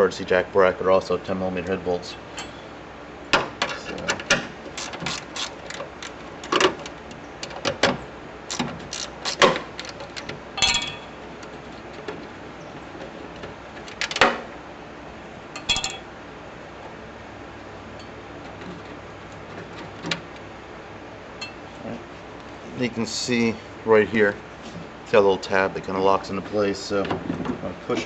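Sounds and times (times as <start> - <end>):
socket ratchet clicking: 4.8 - 5.8, 8.5 - 10.3
metal tools clinking: 9.0 - 11.2, 15.6 - 16.1.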